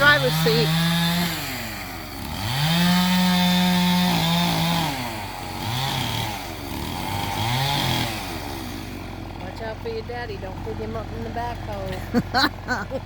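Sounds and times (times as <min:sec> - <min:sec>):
chainsaw revving: 0:00.0 - 0:13.0.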